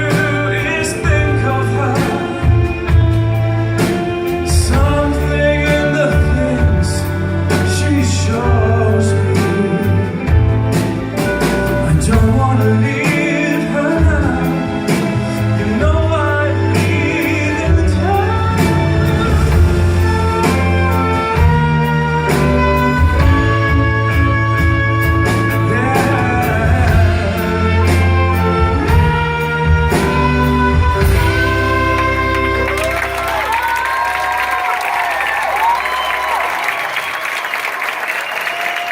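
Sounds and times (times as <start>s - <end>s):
gliding lead melody: 0.0s - 34.3s
bass line: 0.0s - 37.0s
live band playing slow ballad: 0.0s - 38.9s.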